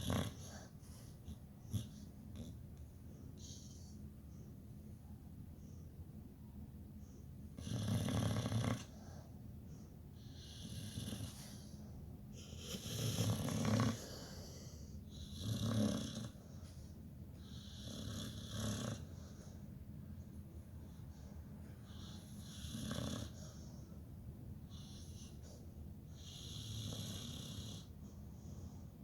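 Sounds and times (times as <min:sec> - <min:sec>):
dog snoring: 0:00.0 - 0:02.6, 0:07.5 - 0:09.2, 0:10.2 - 0:11.8, 0:12.4 - 0:16.6, 0:17.4 - 0:19.5, 0:21.8 - 0:23.8, 0:24.7 - 0:28.8.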